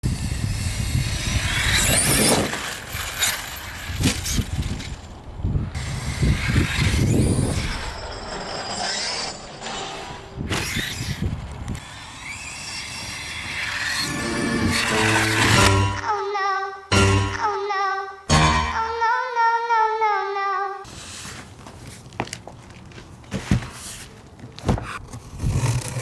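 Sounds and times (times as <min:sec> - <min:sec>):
electric motor whine: 0:00.0 - 0:04.9, 0:05.7 - 0:15.8
tyre and ground noise: 0:00.0 - 0:16.0, 0:20.9 - 0:26.0.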